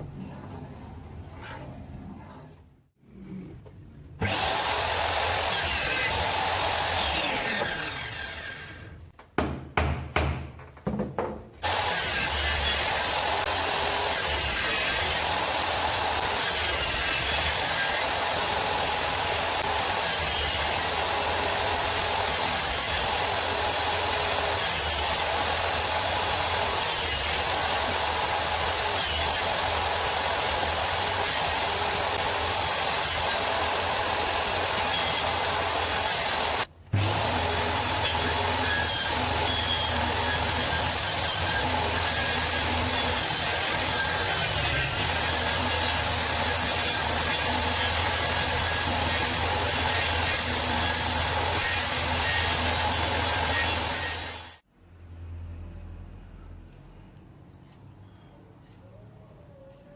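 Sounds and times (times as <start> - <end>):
electric power tool running: 4.2 - 8.8, 11.6 - 54.6.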